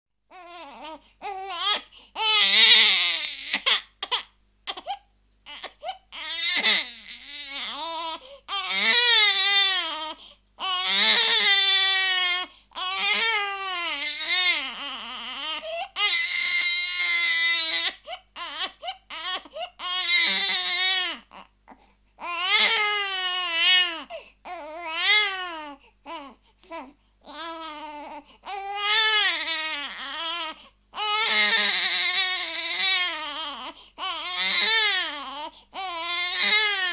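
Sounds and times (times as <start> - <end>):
baby crying: 0.3 - 36.9.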